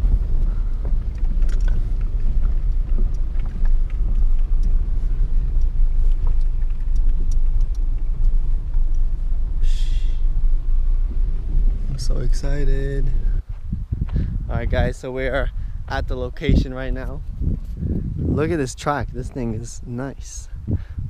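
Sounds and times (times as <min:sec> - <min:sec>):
car tyres rumbling: 0:00.0 - 0:21.0
small clicks and knocks: 0:00.8 - 0:04.8, 0:05.5 - 0:09.1.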